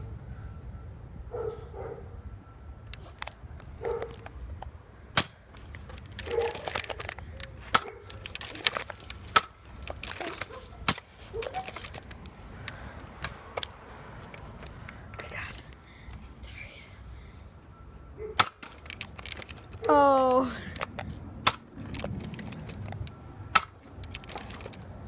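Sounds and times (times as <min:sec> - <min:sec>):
foam dart blasters snapping: 0:18.4 - 0:19.0, 0:23.5 - 0:23.8.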